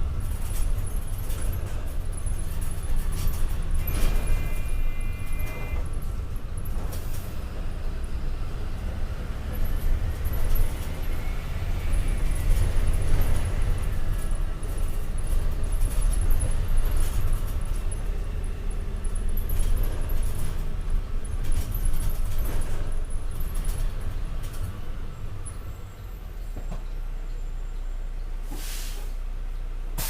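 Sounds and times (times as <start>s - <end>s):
bus diesel engine rumbling: 0.0s - 30.0s
rattles and clicks: 19.1s - 24.7s.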